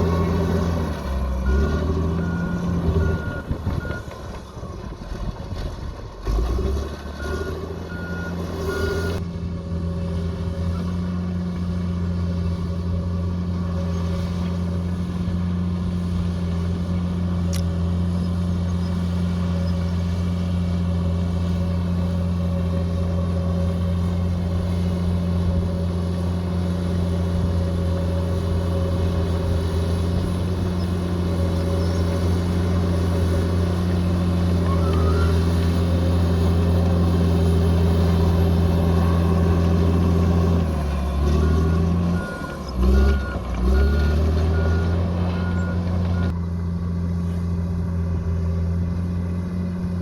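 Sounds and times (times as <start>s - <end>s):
diesel engine running: 0.0s - 50.0s
short reversing beeps: 7.2s - 9.2s, 41.3s - 46.4s.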